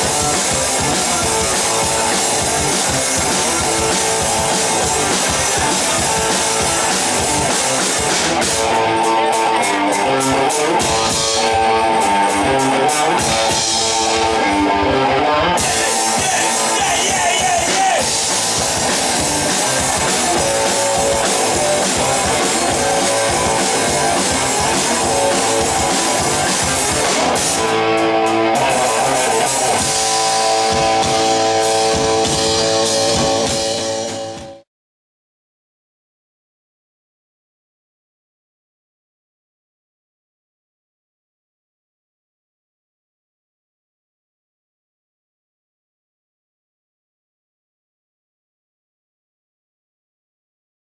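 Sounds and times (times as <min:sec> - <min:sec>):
rock band playing live: 0:00.0 - 0:34.6.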